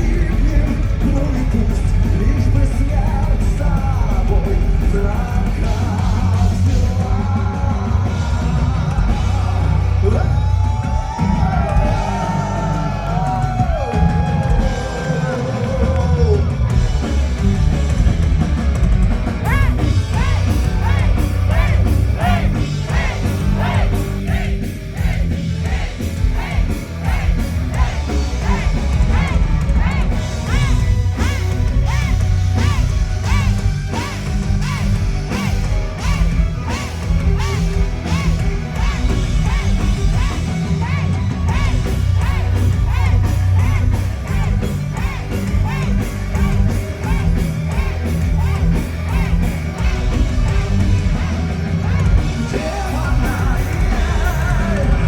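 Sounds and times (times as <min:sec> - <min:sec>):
high melodic lead guitar: 0:00.0 - 0:55.0
metal band playing: 0:00.0 - 0:55.0.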